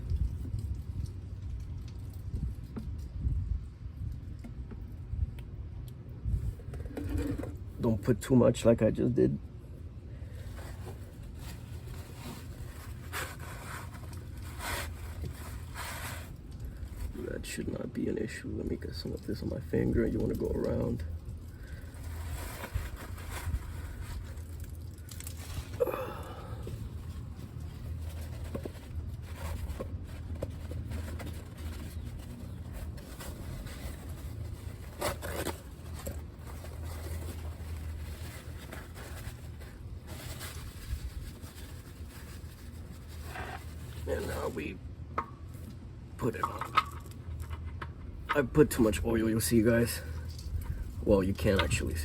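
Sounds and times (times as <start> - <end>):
steady low hum: 0.0 - 52.0
steady low rumble: 7.6 - 52.0
scraping rubbing sounds: 10.3 - 17.9, 21.6 - 25.8, 26.6 - 44.7.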